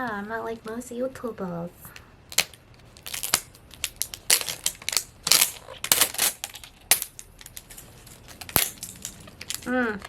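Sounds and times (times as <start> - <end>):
plastic packaging crinkling and tearing: 2.3 - 10.0.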